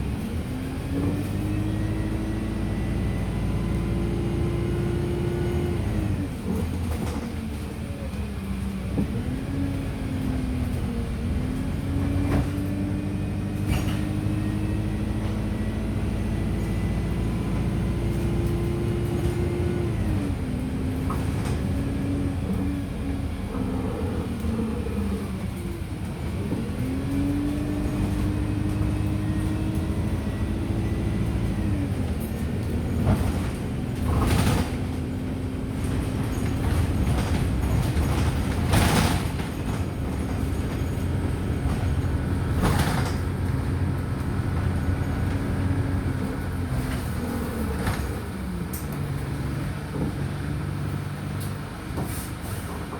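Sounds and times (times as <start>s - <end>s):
bus engine: 0.0s - 52.9s
road noise: 0.0s - 52.9s
knocks and rattles: 35.8s - 43.6s.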